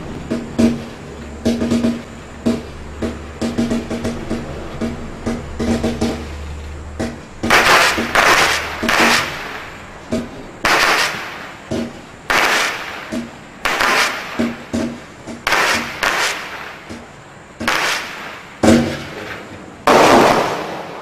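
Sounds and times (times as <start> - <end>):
firework launch thumps: 7.0 - 17.0
firework crackle bursts: 7.5 - 10.0, 10.6 - 17.0, 17.6 - 21.0.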